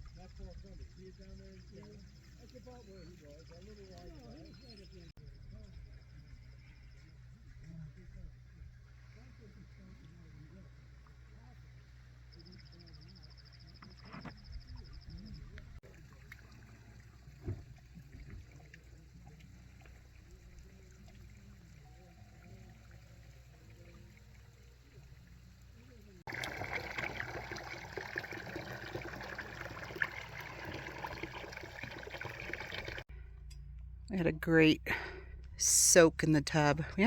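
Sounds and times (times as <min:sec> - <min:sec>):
water trickling into a tub: 0:15.8 - 0:33.1
distant voices: 0:26.2 - 0:33.0.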